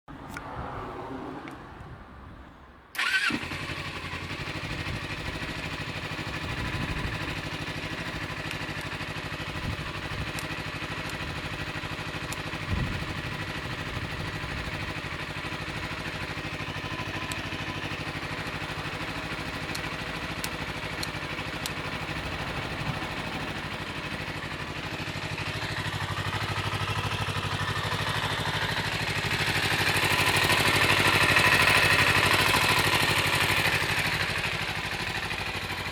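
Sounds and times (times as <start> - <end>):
motorcycle engine starting and idling: 2.9 - 35.9.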